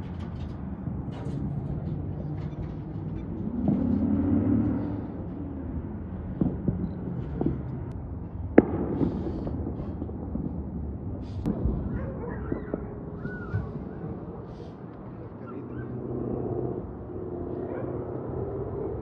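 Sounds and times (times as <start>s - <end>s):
low rumble: 0.0s - 19.0s
fireworks popping and banging: 6.0s - 15.2s.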